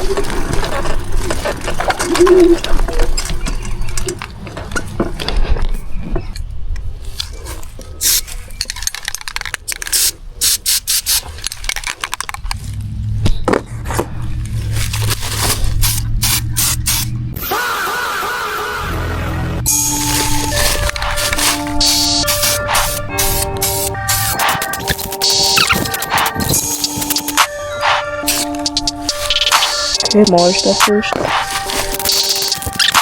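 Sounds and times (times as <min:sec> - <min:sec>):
spray can hissing bursts: 0:09.8 - 0:11.3, 0:15.8 - 0:17.1, 0:19.7 - 0:27.5, 0:28.2 - 0:33.0.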